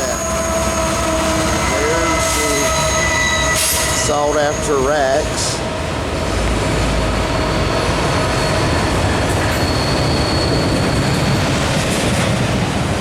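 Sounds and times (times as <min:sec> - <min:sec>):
wheel squeal: 0:00.0 - 0:05.2, 0:07.3 - 0:11.7
train wheels rumbling on rail: 0:00.0 - 0:13.0.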